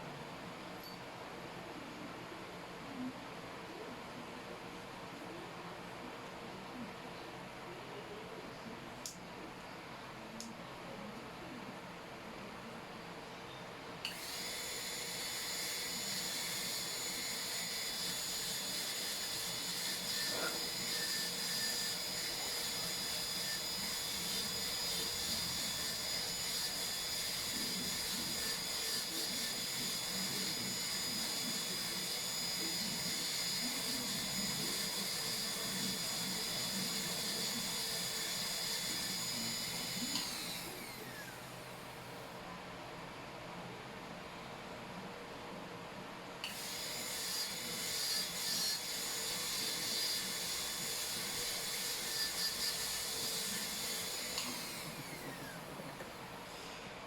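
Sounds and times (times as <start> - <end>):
dental drill whine: 14.1 - 41.9, 46.4 - 56.2.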